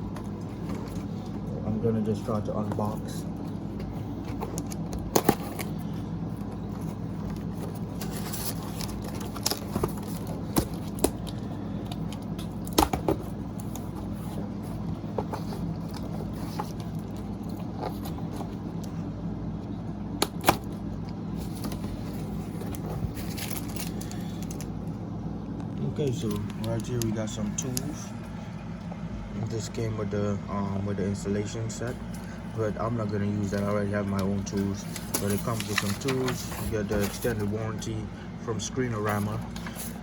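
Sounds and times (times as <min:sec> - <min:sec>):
low background hum: 0:00.0 - 0:40.0
cardboard packaging being opened: 0:02.1 - 0:18.8, 0:20.3 - 0:24.9, 0:33.5 - 0:37.5.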